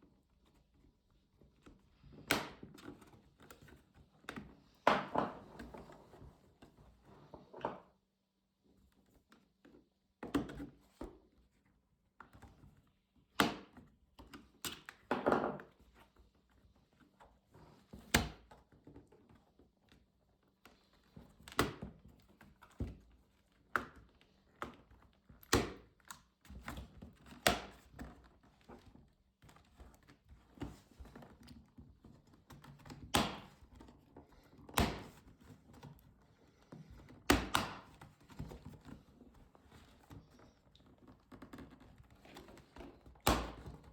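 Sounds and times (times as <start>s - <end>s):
plastic laptop casing clicks: 37.3s - 38.2s.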